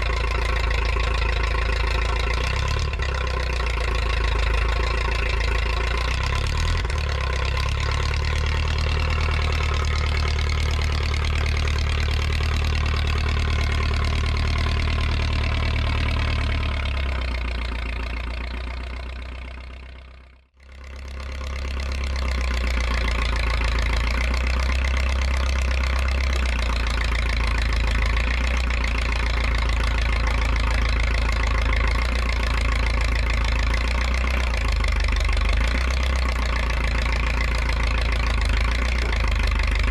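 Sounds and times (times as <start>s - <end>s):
dozer engine running: 0.0s - 39.9s.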